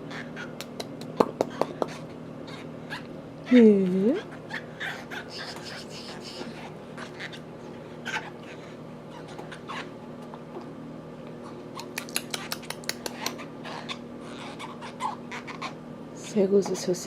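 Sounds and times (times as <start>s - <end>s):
steady low hum: 0.0s - 17.0s
toddler chewing plastic cup spout: 11.7s - 15.8s.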